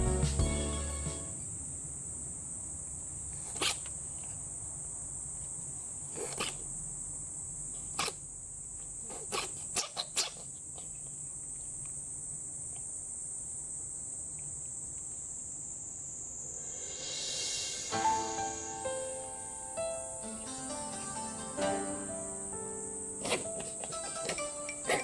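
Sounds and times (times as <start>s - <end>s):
cat sneezing: 3.3s - 3.9s, 6.1s - 6.7s, 7.8s - 8.3s, 9.0s - 10.9s, 23.2s - 25.0s
high-pitched insect chirr: 14.4s - 25.0s.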